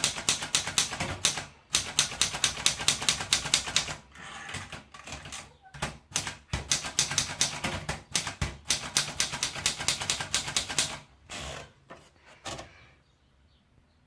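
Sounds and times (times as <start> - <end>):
typewriter key strikes: 0.0 - 11.0
typewriter rasping: 0.0 - 11.8.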